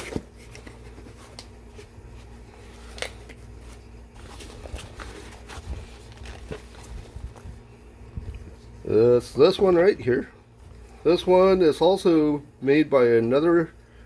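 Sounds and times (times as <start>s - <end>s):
packaging clicks and rustles: 2.8s - 8.7s.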